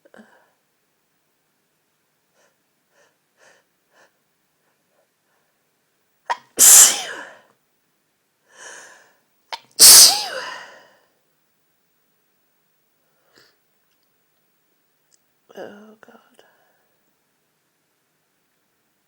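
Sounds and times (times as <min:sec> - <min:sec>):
woman sneezing: 0:06.3 - 0:07.4, 0:09.5 - 0:10.8.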